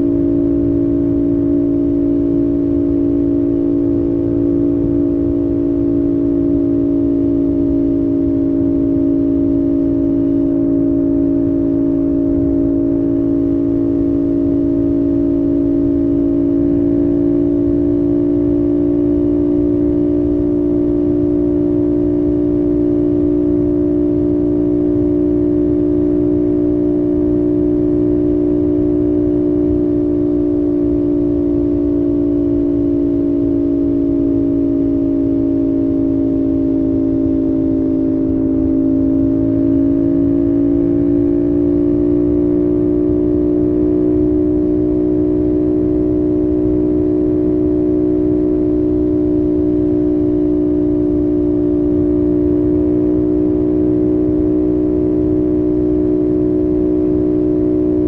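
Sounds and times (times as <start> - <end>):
motorcycle engine droning: 0.0 - 58.0
road rumble: 0.0 - 58.0.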